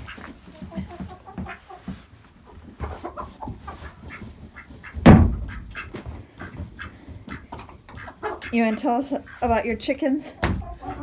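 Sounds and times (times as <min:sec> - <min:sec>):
chickens clucking: 0:00.0 - 0:11.0
feed container knocked on wood: 0:05.0 - 0:05.5.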